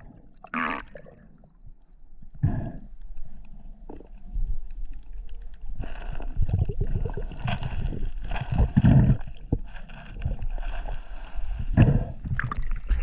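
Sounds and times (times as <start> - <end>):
stream water sloshing and gurgling: 0.0 - 1.8, 5.8 - 13.0.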